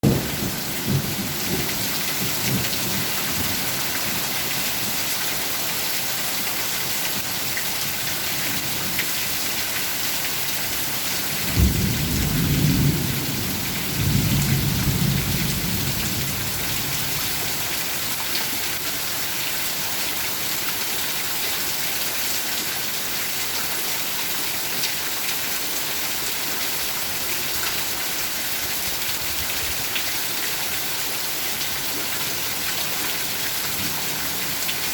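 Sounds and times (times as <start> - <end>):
rain pouring: 0.0 - 34.9
thunder rumbling: 11.4 - 16.9.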